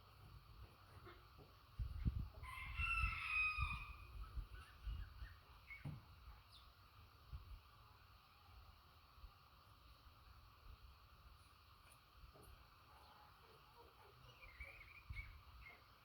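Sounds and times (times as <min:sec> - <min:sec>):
rooster crowing: 0:02.4 - 0:04.1.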